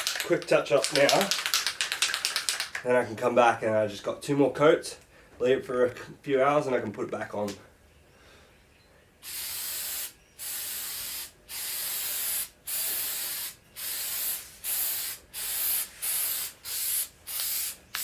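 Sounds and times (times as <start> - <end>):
aerosol spray can hissing: 0.0 - 2.8, 9.2 - 18.0.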